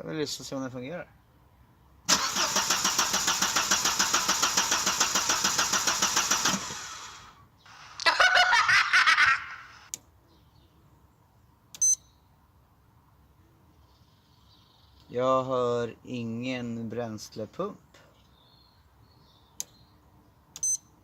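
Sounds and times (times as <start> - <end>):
car engine cranking on starter: 2.1 - 7.4
short high beep: 11.8 - 12.1
click: 19.6 - 19.8.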